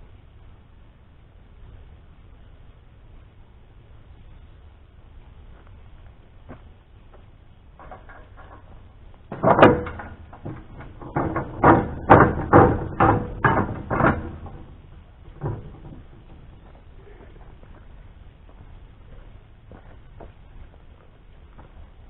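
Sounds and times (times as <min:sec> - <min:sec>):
wooden boards knocking together: 0:09.3 - 0:16.4.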